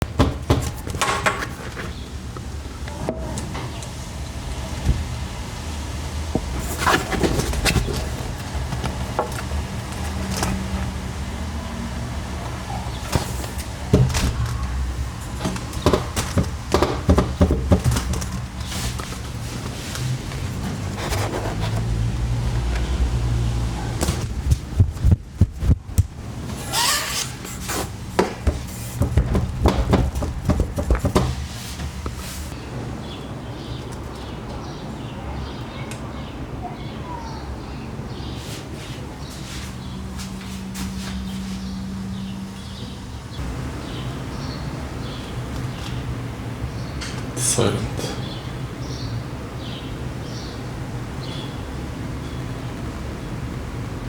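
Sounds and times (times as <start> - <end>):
low steady hum: 1.5 - 26.6
low wind rumble: 1.9 - 26.6
blinds knocking against window frame: 28.1 - 32.0.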